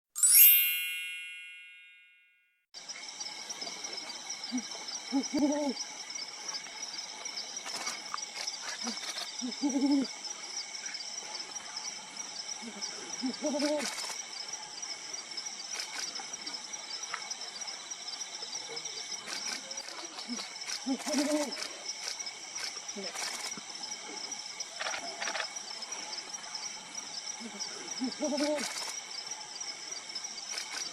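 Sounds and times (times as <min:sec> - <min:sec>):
owl hooting: 0:04.5 - 0:05.9, 0:08.8 - 0:10.2, 0:12.6 - 0:14.1, 0:20.3 - 0:21.7.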